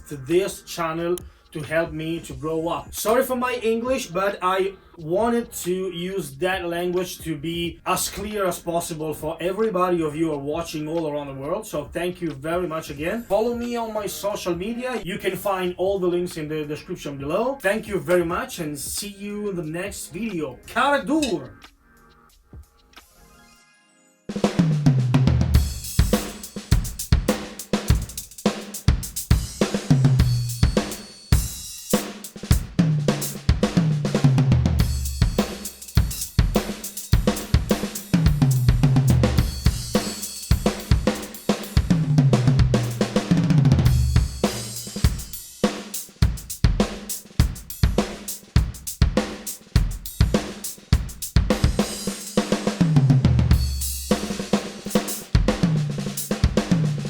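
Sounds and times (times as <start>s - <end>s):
electronic drum kit playing: 0.0s - 4.4s, 17.2s - 23.4s, 24.3s - 57.0s
tom fills: 18.8s - 21.7s, 24.3s - 57.0s
cymbal wash: 25.6s - 34.2s, 34.8s - 41.9s.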